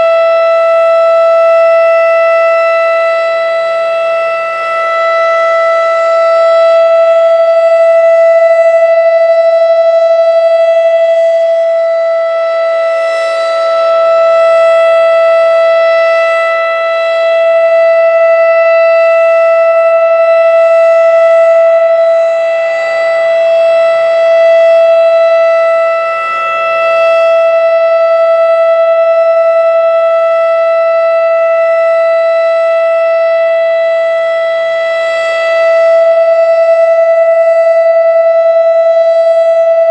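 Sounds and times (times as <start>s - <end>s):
warning siren steady tone: 0.0s - 39.9s.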